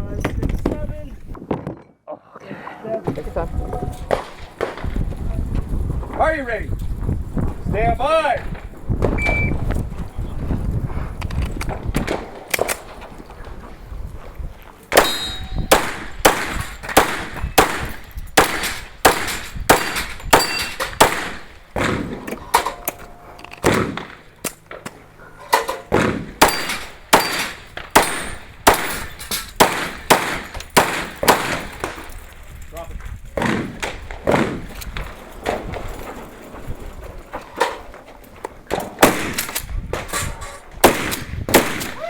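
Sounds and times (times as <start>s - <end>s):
steel targets ringing: 15.0s - 15.8s, 19.3s - 20.9s, 26.4s - 29.2s.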